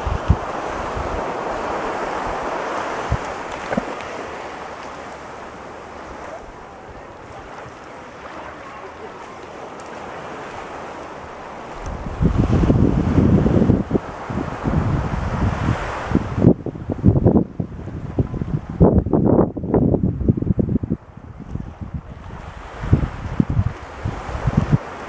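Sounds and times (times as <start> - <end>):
ocean surf breaking: 0.0 - 18.9, 20.4 - 25.0
wind buffeting microphone: 0.0 - 25.0.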